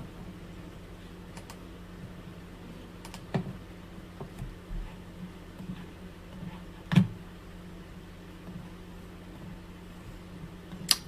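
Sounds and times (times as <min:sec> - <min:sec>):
low electrical hum: 0:00.0 - 0:11.0
computer keyboard clicks: 0:01.4 - 0:01.6, 0:03.0 - 0:03.2.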